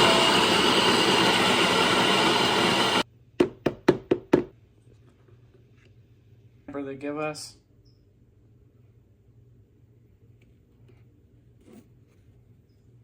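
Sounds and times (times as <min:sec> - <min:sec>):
electric coffee grinder running: 0:00.0 - 0:03.0.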